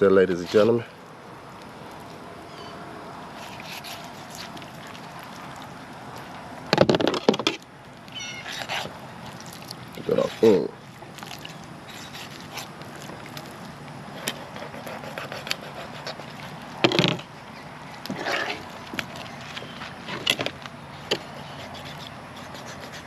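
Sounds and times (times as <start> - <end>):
knife scraping or tearing: 3.4 - 4.7, 8.4 - 10.5, 11.3 - 12.8, 14.1 - 16.8, 18.1 - 20.4, 21.1 - 23.0.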